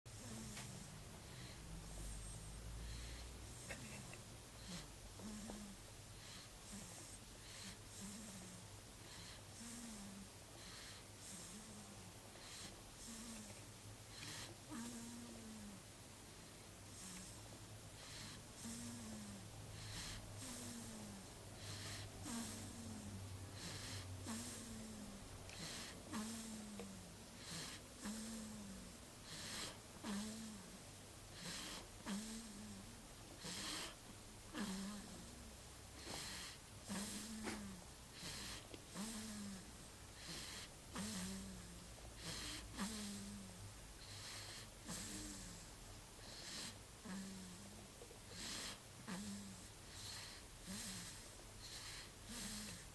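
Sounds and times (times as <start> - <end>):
faint rasping snoring: 0.1 - 15.8, 16.9 - 52.9
person snoring: 33.4 - 35.4.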